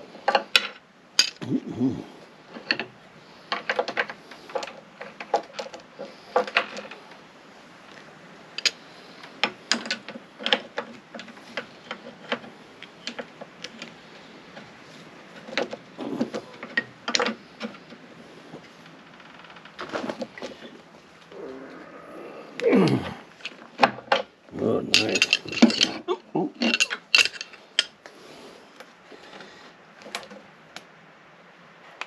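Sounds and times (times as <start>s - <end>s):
hand tools clinking on metal: 8.6s - 8.8s, 24.6s - 28.0s.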